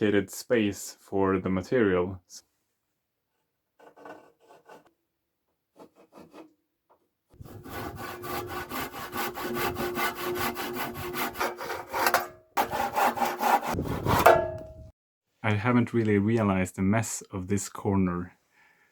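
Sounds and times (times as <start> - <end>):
handsaw cutting wood: 7.4 - 14.4.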